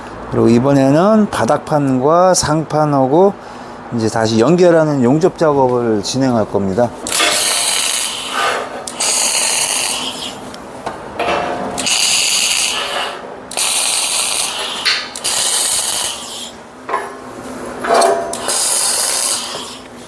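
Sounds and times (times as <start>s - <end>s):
arc welding crackle: 7.0s - 10.5s, 11.8s - 16.6s, 18.3s - 20.0s.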